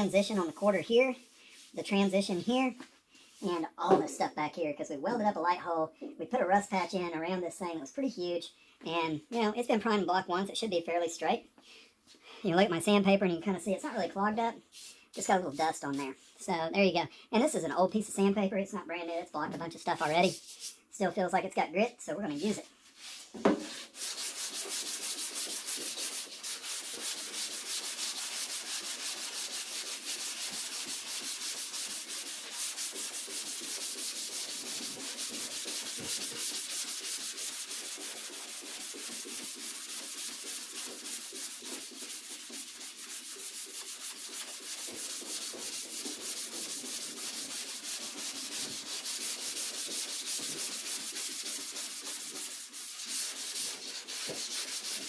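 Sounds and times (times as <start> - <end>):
sandpaper rubbing on metal: 22.4 - 55.0.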